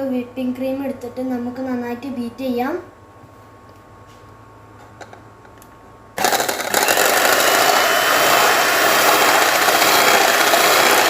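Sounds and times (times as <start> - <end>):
electric mixer whipping cream: 6.2 - 11.0.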